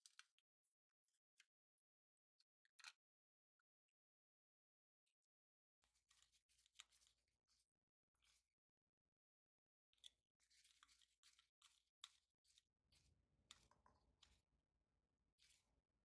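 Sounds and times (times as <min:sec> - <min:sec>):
faint clicks and scrapes: 0:00.0 - 0:01.6, 0:02.4 - 0:03.0, 0:05.8 - 0:08.5, 0:10.0 - 0:14.5, 0:15.3 - 0:15.8.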